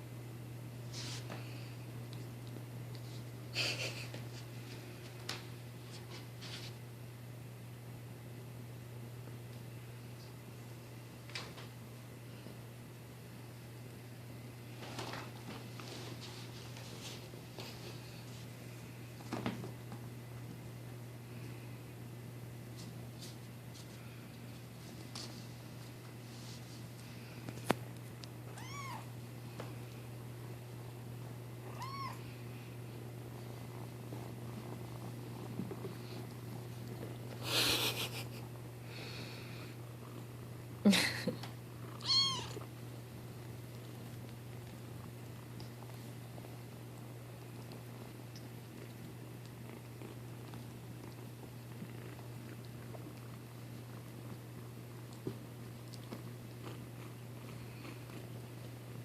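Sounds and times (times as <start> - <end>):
kitten meowing: 28.5 - 29.1, 31.7 - 32.2, 42.0 - 42.6
kitten purring: 28.5 - 59.0.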